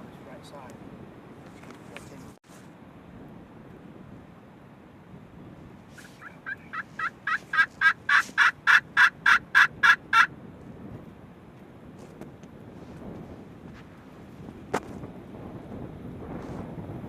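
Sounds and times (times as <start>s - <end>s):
turkey yelps: 6.0s - 10.3s.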